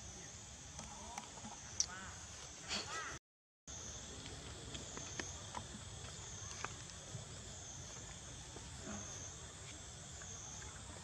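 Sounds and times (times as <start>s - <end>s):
high-pitched insect chorus: 3.7s - 11.0s.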